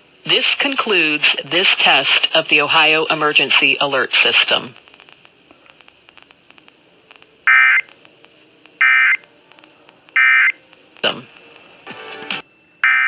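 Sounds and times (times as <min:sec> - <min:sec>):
faint broadcast hiss: 0:00.0 - 0:12.9
screeching digital bursts: 0:08.8 - 0:09.2, 0:10.2 - 0:11.2.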